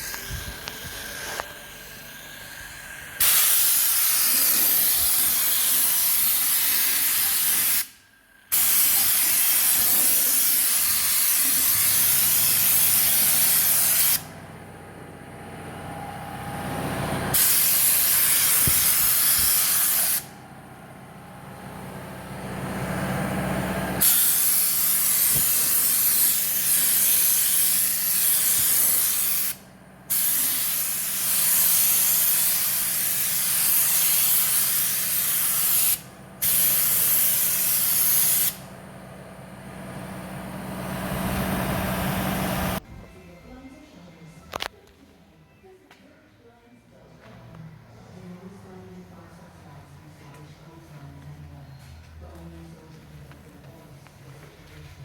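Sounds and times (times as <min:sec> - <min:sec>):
spray gun hissing: 0:02.2 - 0:14.3, 0:17.3 - 0:20.3, 0:24.0 - 0:38.6.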